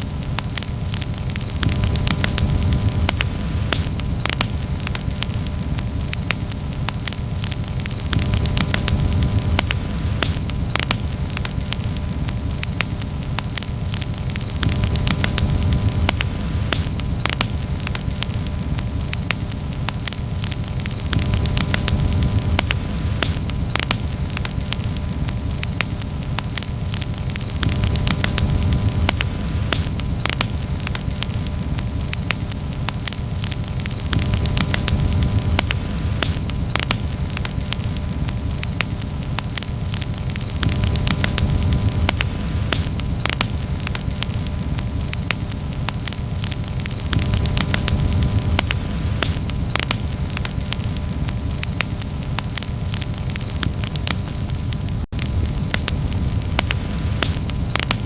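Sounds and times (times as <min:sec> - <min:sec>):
campfire crackling and popping: 0:00.0 - 0:58.0
low rumble of burning fire: 0:00.0 - 0:58.0.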